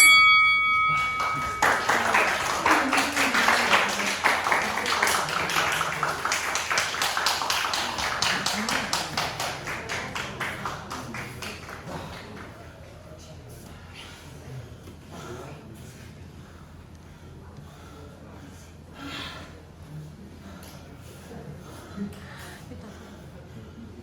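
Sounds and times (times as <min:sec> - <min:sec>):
crowd clapping: 0:00.8 - 0:12.6.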